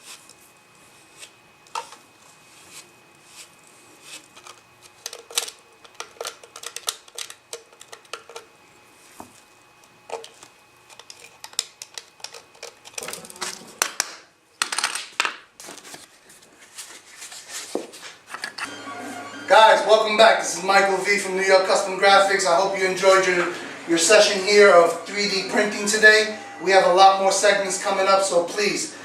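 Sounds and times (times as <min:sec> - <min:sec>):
plastic piece and tools clicking: 0:04.4 - 0:08.4.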